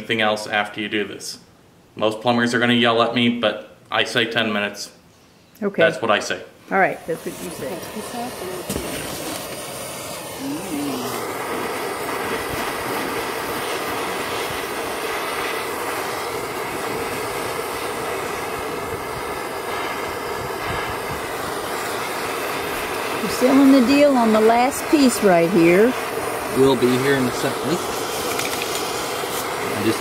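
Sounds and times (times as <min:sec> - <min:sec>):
gas torch flame burning: 0:06.2 - 0:30.0.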